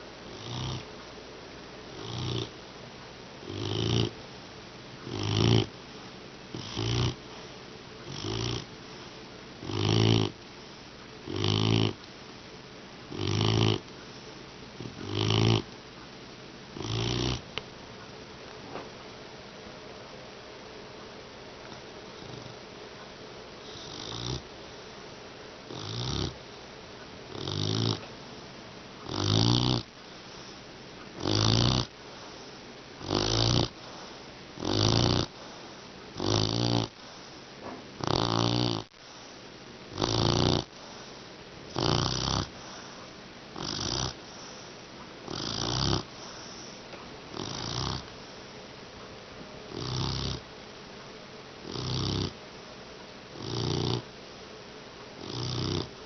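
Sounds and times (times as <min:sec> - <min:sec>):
puppy snoring: 0:00.0 - 0:01.0, 0:01.9 - 0:02.6, 0:03.4 - 0:04.2, 0:05.0 - 0:05.8, 0:06.5 - 0:12.1, 0:13.0 - 0:15.8, 0:16.7 - 0:17.6, 0:22.1 - 0:22.6, 0:23.6 - 0:26.6, 0:27.3 - 0:28.4, 0:29.0 - 0:48.5, 0:49.7 - 0:50.5, 0:51.6 - 0:52.4, 0:53.3 - 0:54.1, 0:55.2 - 0:56.0.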